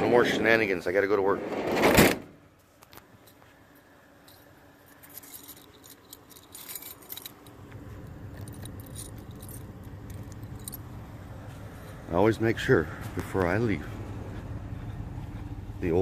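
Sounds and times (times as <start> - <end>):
keys jangling: 4.3 - 11.0
low rumble: 7.7 - 16.0.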